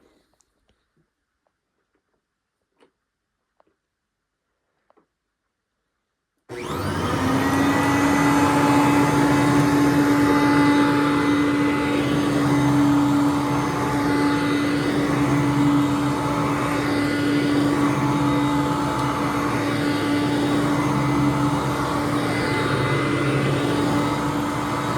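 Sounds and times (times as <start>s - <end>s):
vacuum cleaner motor whining: 6.5s - 24.9s.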